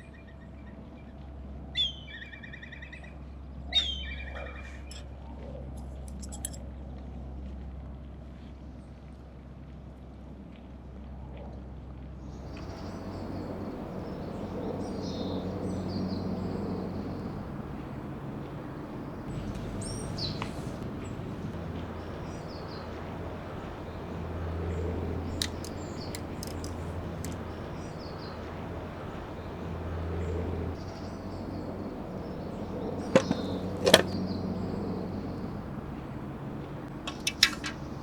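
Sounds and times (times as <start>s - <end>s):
small birds chirping: 12.4s - 38.0s
low steady hum: 12.5s - 38.0s
sharp clicks: 12.6s - 38.0s.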